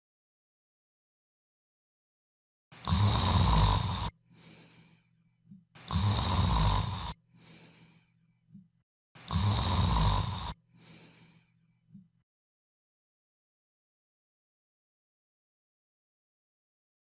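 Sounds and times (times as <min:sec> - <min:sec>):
person snoring: 0:02.8 - 0:05.0, 0:05.8 - 0:08.0, 0:09.2 - 0:11.5
soft breath: 0:02.8 - 0:12.2.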